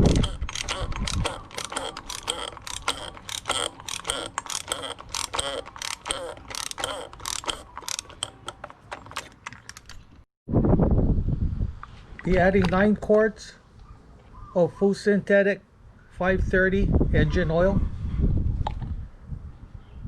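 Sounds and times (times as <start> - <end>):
hand ratchet clicking: 0.0 - 10.0.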